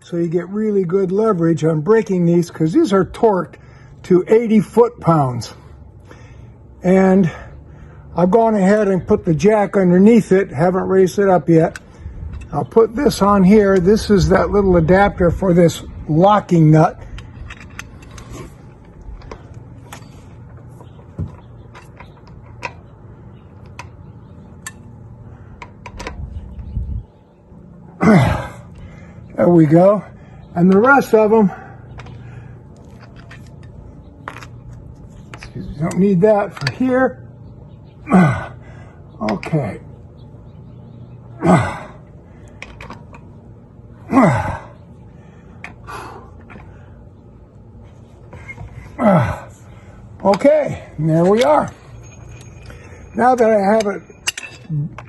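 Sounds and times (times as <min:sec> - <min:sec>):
low steady hum: 0:00.0 - 0:55.0
man grunting: 0:28.0 - 0:28.6, 0:38.1 - 0:38.6, 0:41.4 - 0:42.0, 0:44.0 - 0:44.8, 0:49.0 - 0:49.6
metallic clicks and knocks: 0:51.2 - 0:55.0.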